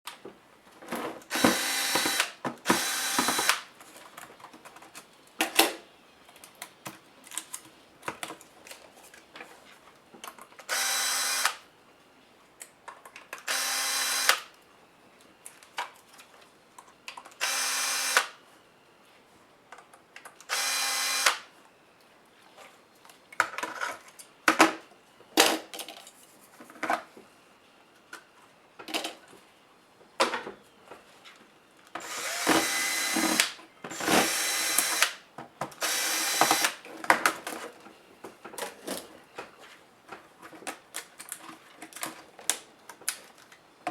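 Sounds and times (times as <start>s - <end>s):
electric screwdriver running: 1.3s - 3.6s, 10.7s - 11.6s, 13.5s - 14.4s, 17.4s - 18.3s, 20.5s - 21.4s, 32.0s - 35.2s, 35.8s - 36.8s
screws and plastic clicking: 1.3s - 3.6s, 32.0s - 35.2s, 35.8s - 36.8s.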